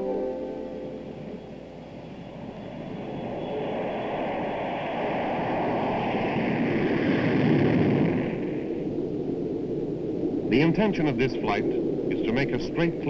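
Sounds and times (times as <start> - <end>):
aircraft engine rushing: 0.0 - 13.0.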